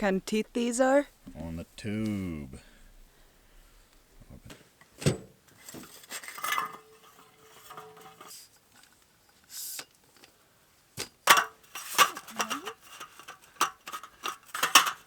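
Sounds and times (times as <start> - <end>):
hard objects clinking and clattering: 5.6 - 8.5, 11.3 - 15.0.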